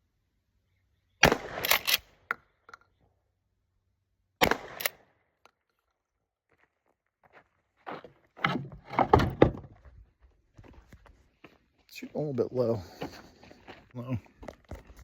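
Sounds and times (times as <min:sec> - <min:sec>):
shotgun shots: 0:01.2 - 0:02.2, 0:04.4 - 0:05.1.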